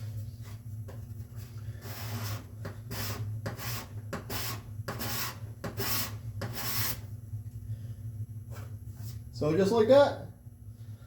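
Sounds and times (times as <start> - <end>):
card scraper scraping wood: 1.8 - 7.0.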